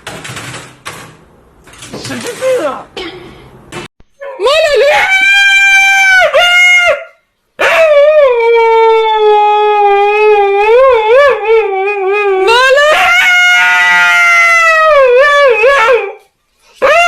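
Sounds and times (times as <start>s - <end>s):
dog howling: 4.2s - 17.0s.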